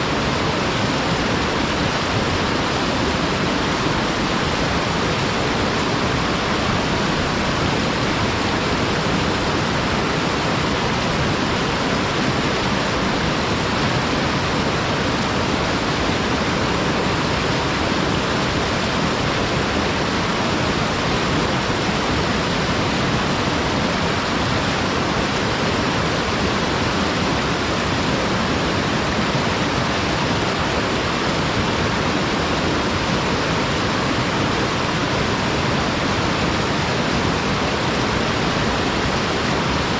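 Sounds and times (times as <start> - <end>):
waterfall: 0.0 - 39.9.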